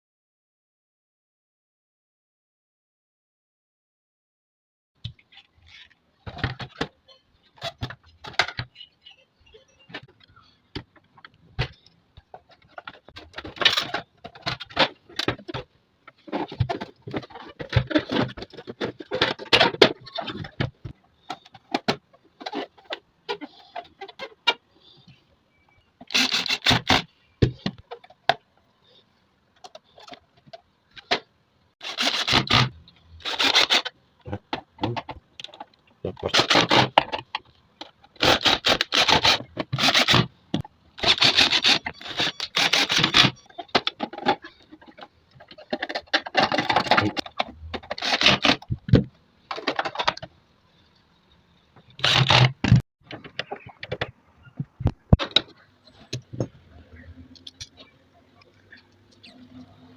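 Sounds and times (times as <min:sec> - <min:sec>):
metal parts clicking and scraping: 0:11.6 - 0:15.6, 0:26.0 - 0:28.1, 0:31.8 - 0:33.9, 0:35.4 - 0:40.3, 0:41.0 - 0:48.8, 0:51.8 - 0:52.8
metal parts rattling: 0:26.1 - 0:27.0, 0:31.8 - 0:33.9, 0:38.2 - 0:40.3, 0:41.0 - 0:44.6, 0:45.5 - 0:48.7, 0:52.0 - 0:52.5.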